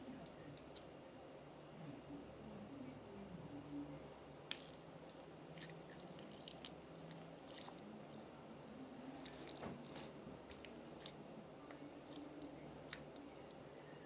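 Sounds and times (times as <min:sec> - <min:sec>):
slime squelching by hand: 0:05.5 - 0:08.0.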